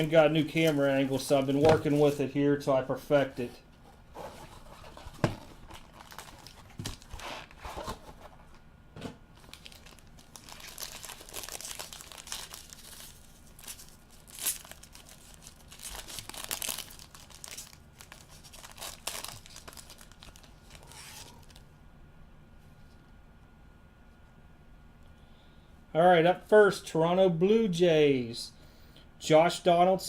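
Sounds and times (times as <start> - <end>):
wrapping crinkling: 4.3 - 8.6, 9.4 - 21.6
packaging being torn open: 5.6 - 8.0, 9.4 - 21.6.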